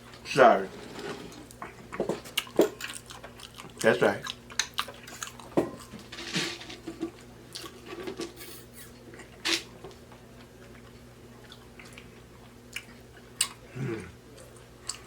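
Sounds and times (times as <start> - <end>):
low electrical hum: 0.0 - 15.0
chewing and lip-smacking: 1.5 - 5.9, 10.1 - 13.7, 14.3 - 15.0.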